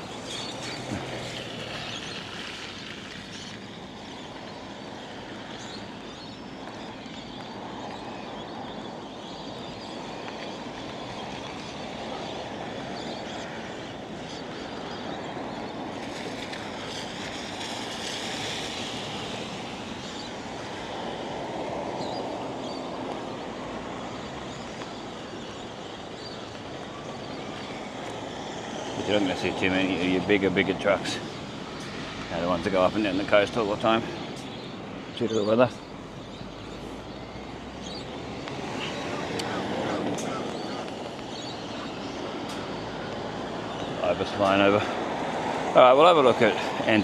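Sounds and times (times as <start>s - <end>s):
tyre hiss on wet road: 16.9s - 19.9s.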